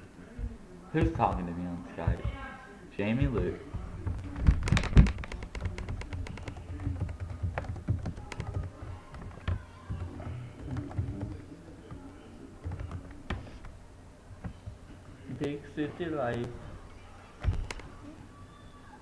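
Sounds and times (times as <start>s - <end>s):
computer keyboard typing: 3.7s - 12.0s, 12.6s - 13.7s.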